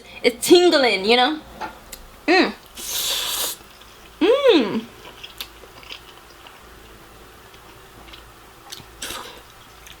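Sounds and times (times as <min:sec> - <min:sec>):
wet chewing of noodles: 0:02.7 - 0:04.2, 0:04.9 - 0:10.0.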